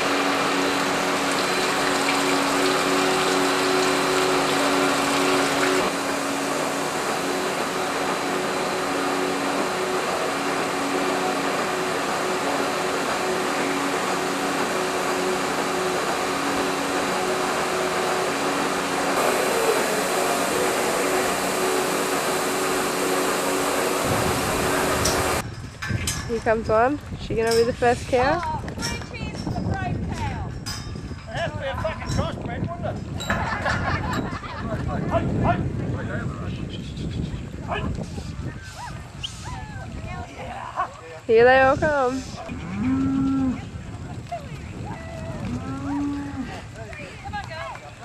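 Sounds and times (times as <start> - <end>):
milking machine vacuum pump humming: 0.0 - 25.4.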